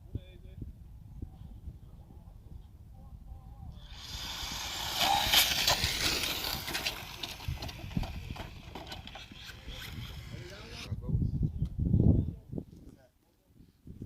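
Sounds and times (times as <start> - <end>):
remote control car passing: 3.8 - 10.9.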